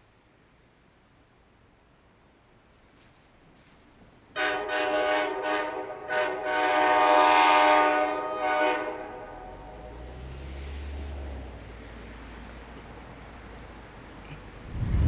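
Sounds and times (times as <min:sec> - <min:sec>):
train air horn blasts: 0:04.4 - 0:10.2
low rumble: 0:14.5 - 0:15.0.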